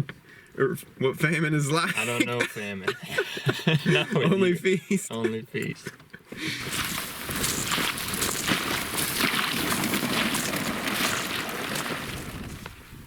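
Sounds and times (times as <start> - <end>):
ice crackling and water sloshing: 6.3 - 13.0.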